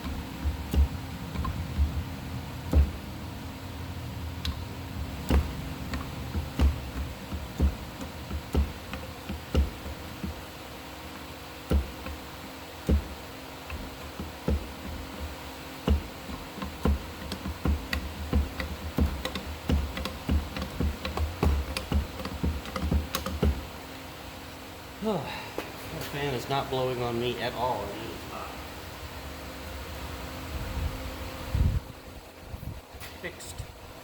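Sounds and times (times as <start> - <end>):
metallic clicks and knocks: 0.0 - 3.1, 4.4 - 10.5, 11.1 - 23.7
fan humming: 0.0 - 34.0.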